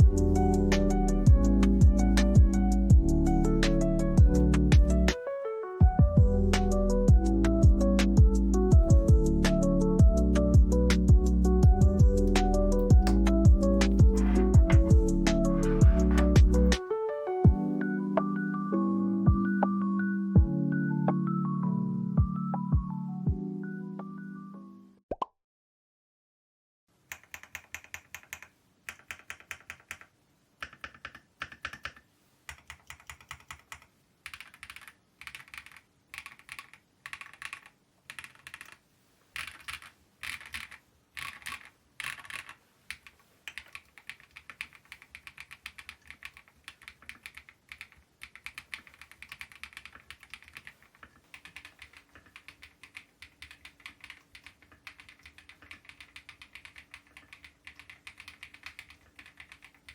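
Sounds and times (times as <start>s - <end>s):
mechanical keyboard typing: 12.2s - 16.8s, 27.1s - 38.8s, 39.4s - 59.9s.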